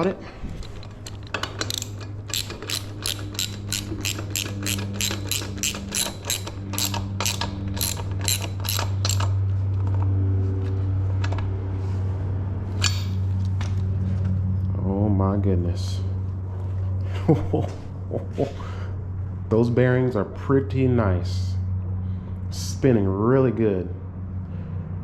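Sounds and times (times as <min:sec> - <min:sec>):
steady low hum: 0:00.0 - 0:25.0
ratchet wrench clicking: 0:00.6 - 0:09.4.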